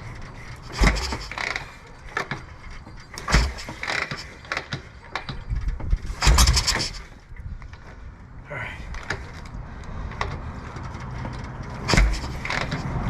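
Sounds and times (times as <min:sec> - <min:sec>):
motorcycle kick-start thumps: 0:00.6 - 0:07.9, 0:10.1 - 0:12.8.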